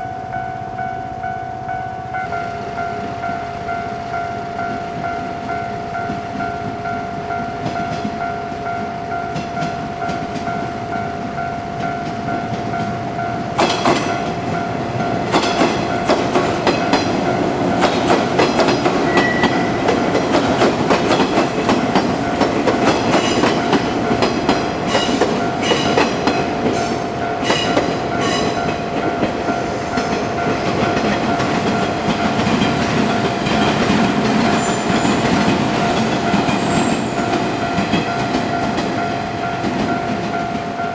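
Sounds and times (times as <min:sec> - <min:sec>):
level crossing warning tone: 0:00.0 - 0:40.9
train wheels clattering over rail joints: 0:13.6 - 0:39.0.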